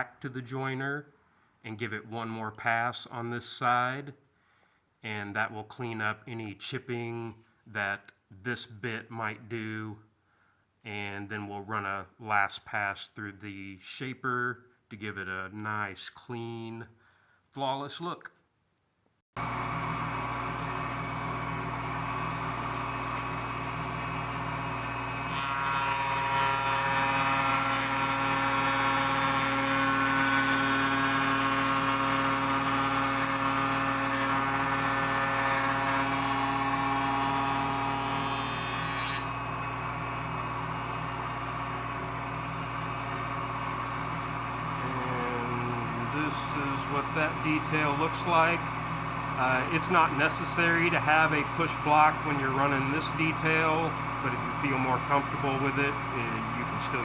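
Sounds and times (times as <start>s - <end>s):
cutter cutting wood: 19.4s - 57.0s
spindle shaper motor hum: 19.4s - 57.0s.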